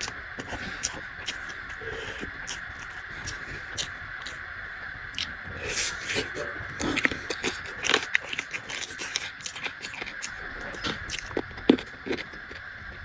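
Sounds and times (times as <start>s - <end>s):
chewing and mouth smacks: 0.0s - 4.4s, 5.1s - 13.0s
crisp clicks: 5.2s - 12.7s.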